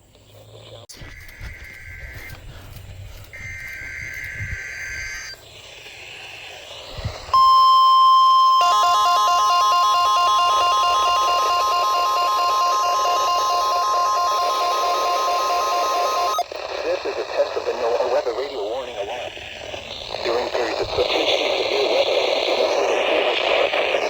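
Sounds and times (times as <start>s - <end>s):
radio static: 0.4s - 7.3s, 11.1s - 24.0s
two-tone data burst: 0.9s - 2.5s, 3.3s - 5.4s, 7.2s - 24.0s
steady warning alarm tone: 1.0s - 5.4s, 7.2s - 16.5s.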